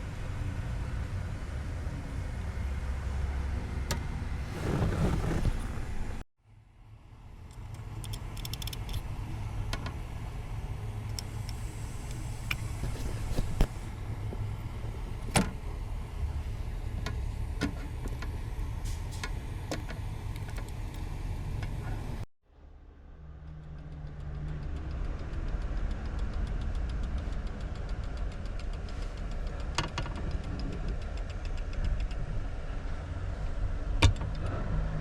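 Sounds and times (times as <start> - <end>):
steady low rumble: 0.0 - 35.0
clock parts clicking and clinking: 8.0 - 9.0.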